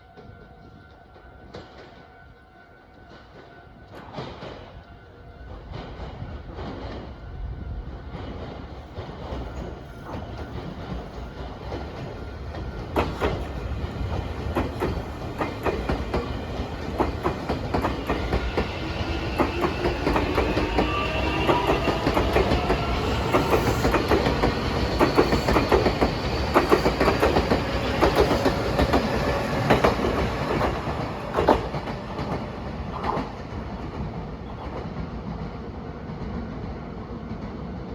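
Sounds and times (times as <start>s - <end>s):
train wheels clicking over rail joints: 8.1s - 35.1s.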